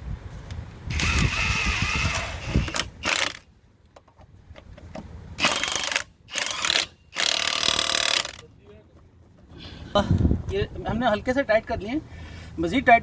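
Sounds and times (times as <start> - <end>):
impact wrench whining: 0.9 - 3.4, 5.4 - 8.4.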